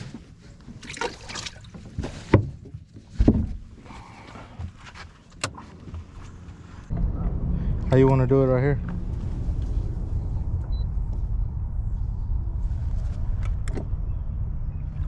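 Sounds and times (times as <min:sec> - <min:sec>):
loud thumps: 0:06.9 - 0:15.0.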